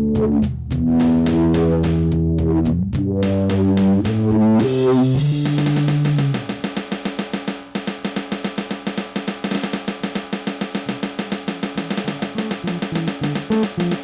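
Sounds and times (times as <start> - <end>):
held instrumental notes: 0.0 - 6.6, 10.8 - 14.0
fast steady drum beat: 0.1 - 14.0.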